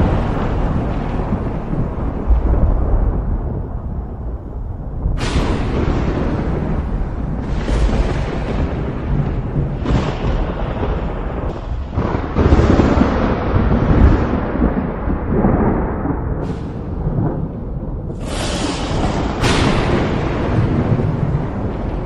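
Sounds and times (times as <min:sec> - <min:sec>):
sharp thunder crack: 0:00.0 - 0:22.0
thunder rumbling: 0:00.0 - 0:22.0.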